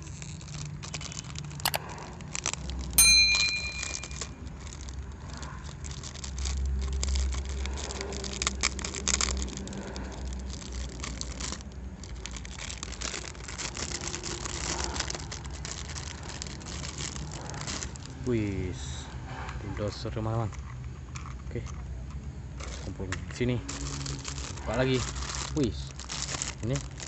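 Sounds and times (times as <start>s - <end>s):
plastic packaging crinkling: 0.0s - 18.6s, 22.6s - 27.0s
low steady hum: 2.4s - 4.9s.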